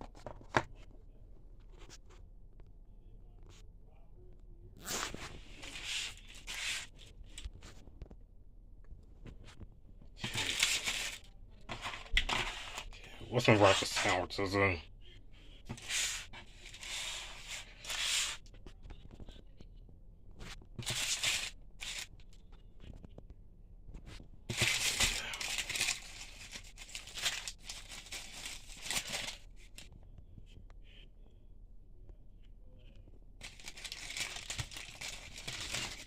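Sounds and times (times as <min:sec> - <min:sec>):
paper food wrappers rustling: 0:05.0 - 0:07.9, 0:10.2 - 0:14.8, 0:20.4 - 0:22.2, 0:24.0 - 0:29.9, 0:33.4 - 0:36.0.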